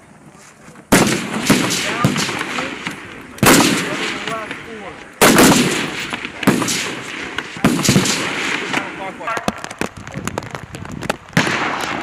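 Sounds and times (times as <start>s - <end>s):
rifle shots echoing: 0.9s - 9.9s, 11.3s - 12.0s.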